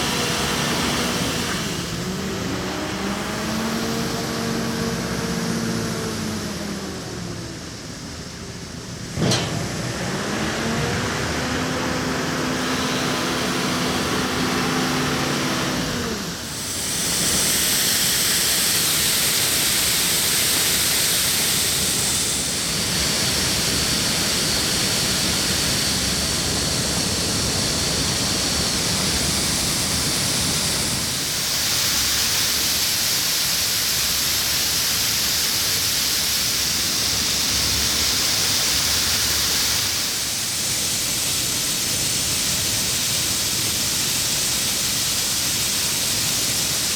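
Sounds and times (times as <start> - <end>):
combine harvester rushing noise: 9.1 - 33.2.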